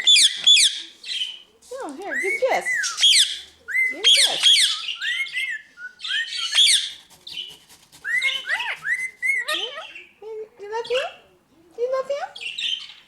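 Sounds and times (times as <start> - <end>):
parrots chirping and whistling: 0.0 - 1.4, 2.1 - 10.1.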